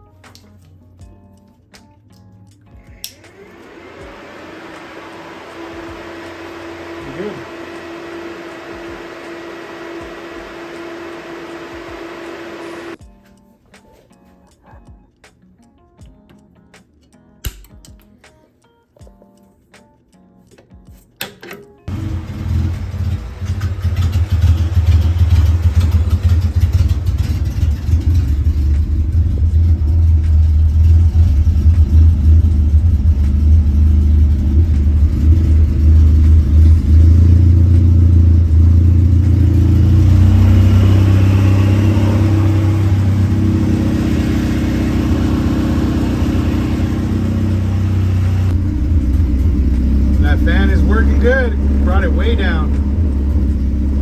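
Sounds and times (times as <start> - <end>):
radiator fan rushing: 3.1 - 13.0, 21.9 - 54.0
car engine idling unevenly: 4.1 - 13.0, 21.9 - 54.0.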